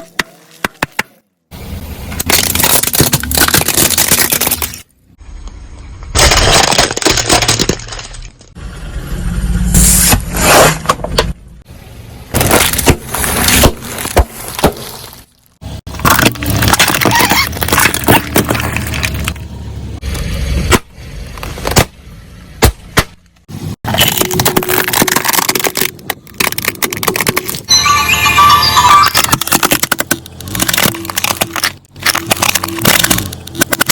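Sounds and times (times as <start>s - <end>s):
tyres crushing crunchy objects: 2.1s - 4.9s, 6.1s - 8.6s, 12.3s - 19.4s, 20.1s - 27.7s, 28.8s - 33.9s.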